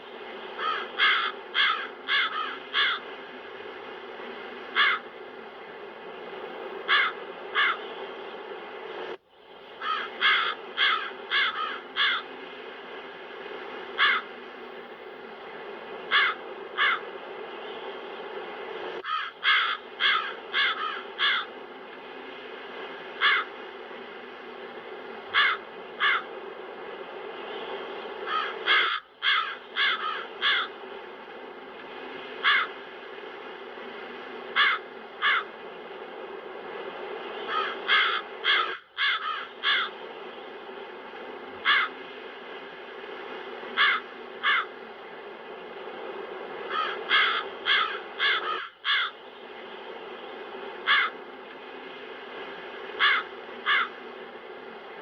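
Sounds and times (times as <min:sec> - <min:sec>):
wind: 0:00.0 - 0:55.0
crows cawing: 0:00.6 - 0:03.1, 0:04.7 - 0:05.1, 0:06.8 - 0:07.8, 0:09.8 - 0:12.3, 0:14.0 - 0:14.4, 0:16.1 - 0:17.1, 0:19.0 - 0:21.6, 0:23.2 - 0:23.6, 0:25.3 - 0:26.3, 0:28.2 - 0:30.8, 0:32.4 - 0:32.8, 0:34.5 - 0:35.5, 0:37.5 - 0:40.0, 0:41.6 - 0:42.0, 0:43.8 - 0:44.8, 0:46.7 - 0:49.2, 0:50.8 - 0:51.2, 0:53.0 - 0:54.0.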